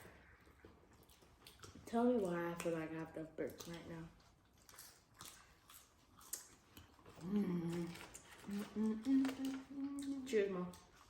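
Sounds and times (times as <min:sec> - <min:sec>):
person humming: 0:07.2 - 0:10.3.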